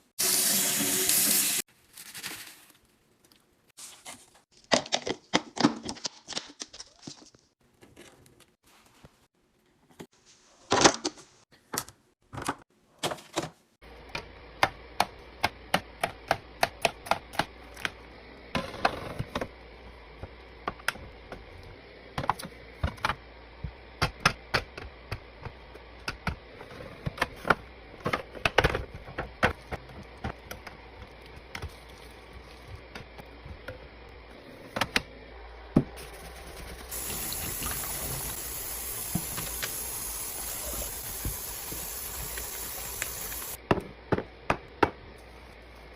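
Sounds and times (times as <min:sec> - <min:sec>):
steady hiss: 0:36.9 - 0:43.6.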